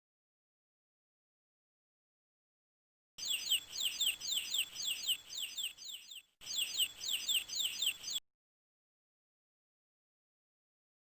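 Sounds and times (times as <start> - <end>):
bird chirping: 3.2 - 8.2.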